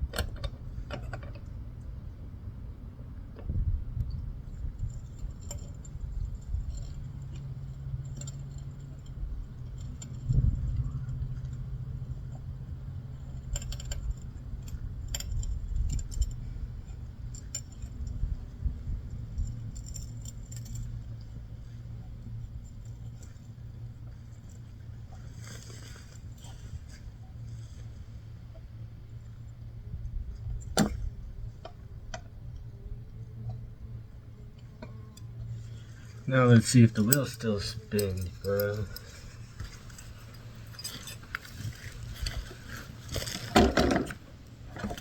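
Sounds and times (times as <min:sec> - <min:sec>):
low steady hum: 0:00.0 - 0:45.0
metal tools clinking: 0:34.8 - 0:45.0.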